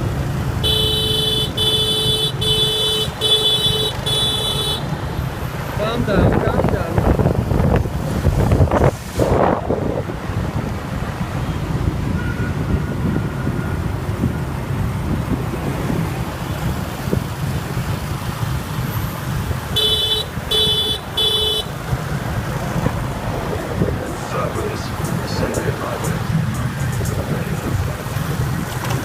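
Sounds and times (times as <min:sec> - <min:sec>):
wind and road noise: 0:00.0 - 0:29.0
vehicle horn beeping: 0:00.6 - 0:04.9, 0:12.2 - 0:13.2, 0:19.7 - 0:21.8.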